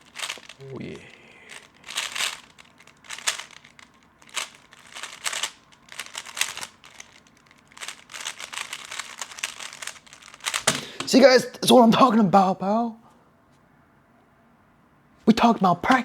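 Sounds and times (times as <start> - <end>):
puzzle cube clacking turns: 0.0 - 11.3.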